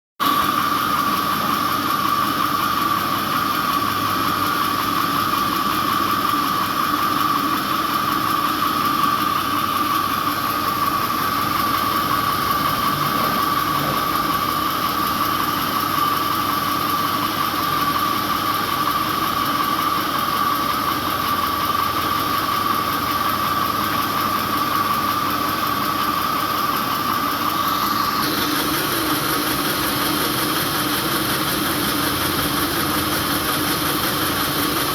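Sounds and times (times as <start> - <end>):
sawmill machinery drone and whine: 0.2 - 34.9.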